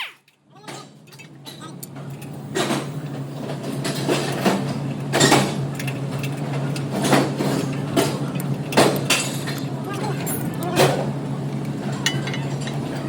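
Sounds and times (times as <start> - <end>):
metal knocks and clinks: 11.9 - 13.0.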